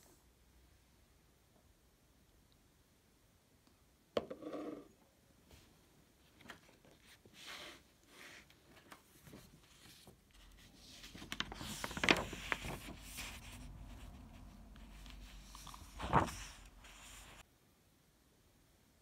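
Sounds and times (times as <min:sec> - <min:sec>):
rustling and scraping: 0:06.3 - 0:17.4.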